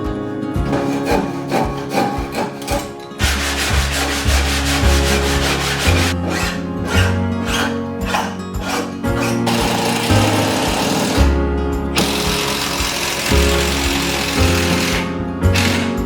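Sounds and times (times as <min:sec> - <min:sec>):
upbeat background music: 0:00.0 - 0:16.0
power sander on wood: 0:03.2 - 0:11.4, 0:12.0 - 0:16.0.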